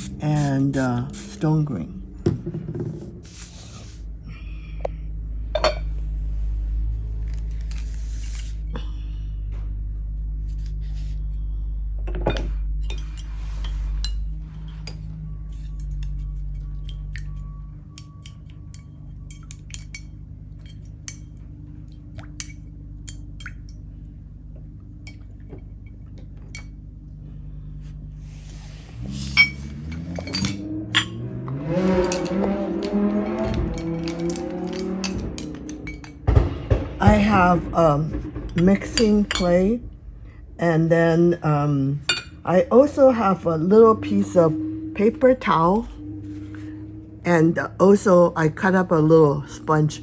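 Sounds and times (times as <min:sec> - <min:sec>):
ceramic dishes clinking: 0:05.6 - 0:05.9, 0:42.1 - 0:42.4.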